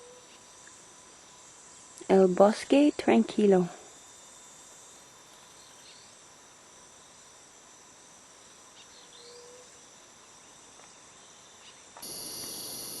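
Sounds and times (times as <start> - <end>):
crickets and insects trilling: 0.0 - 13.0
loud steady hiss: 12.0 - 13.0.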